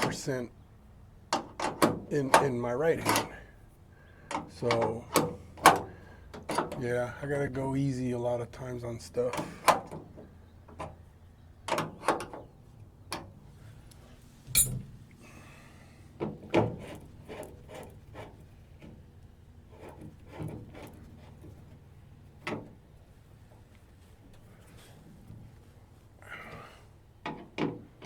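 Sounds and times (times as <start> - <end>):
tools clicking and knocking: 1.4 - 2.4, 14.5 - 14.8.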